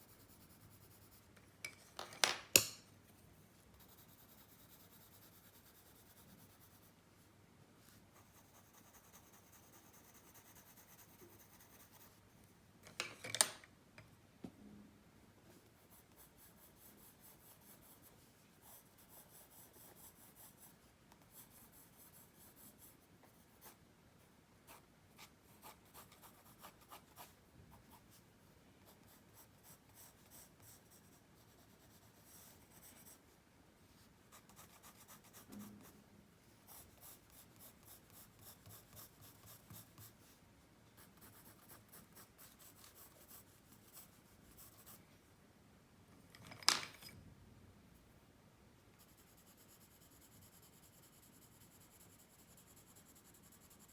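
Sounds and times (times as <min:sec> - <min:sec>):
pencil scratching on paper: 0:03.7 - 0:06.9, 0:08.2 - 0:12.2, 0:15.8 - 0:23.8, 0:24.7 - 0:27.3, 0:28.9 - 0:33.2, 0:34.3 - 0:36.0, 0:36.7 - 0:40.2, 0:41.0 - 0:45.0, 0:49.0 - 0:53.9.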